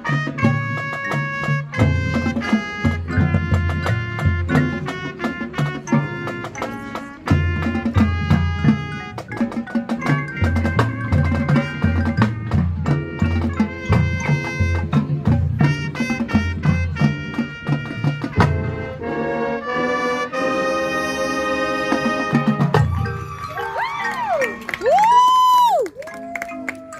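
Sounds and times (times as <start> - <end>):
brass instruments playing: 0.0 - 24.8
drumline: 0.0 - 26.9.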